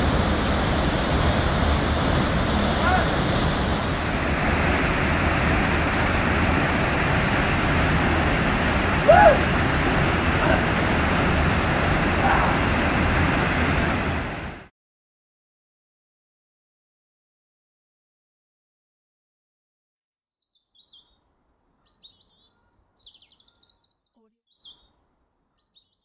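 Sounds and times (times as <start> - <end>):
waterfall rushing: 0.0 - 14.7.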